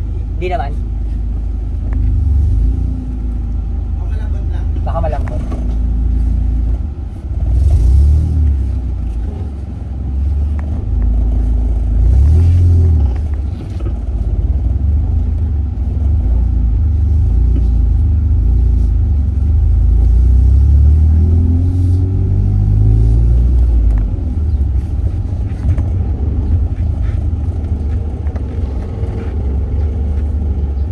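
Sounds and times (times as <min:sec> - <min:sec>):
car engine and road rumble: 0:00.0 - 0:30.9.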